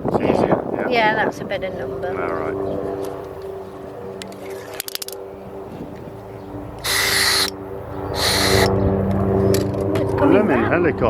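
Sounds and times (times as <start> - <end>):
helicopter drone: 0.0 - 11.0
rattle of clicks: 4.3 - 5.2.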